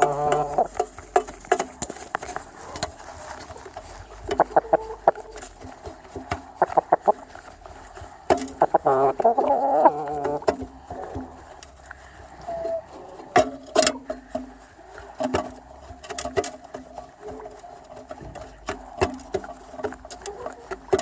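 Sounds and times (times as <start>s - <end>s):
chickens clucking: 0.0s - 21.0s
chickens pecking at feed: 0.0s - 21.0s.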